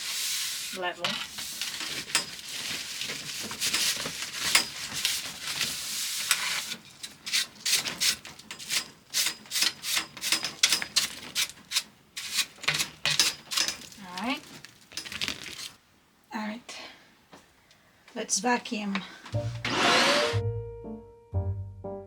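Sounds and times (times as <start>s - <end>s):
hand scrubbing and scraping: 0.0s - 6.7s, 19.5s - 20.4s.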